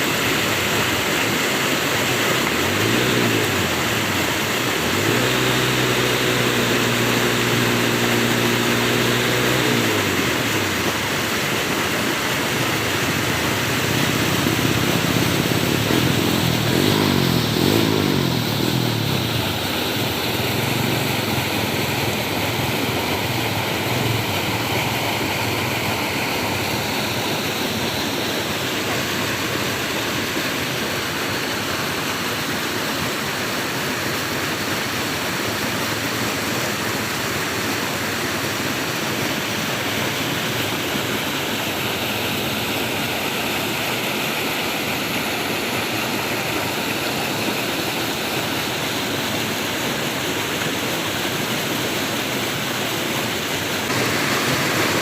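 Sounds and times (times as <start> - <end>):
flowing water rushing: 0.0 - 55.0
engine passing: 0.2 - 32.2, 53.9 - 55.0.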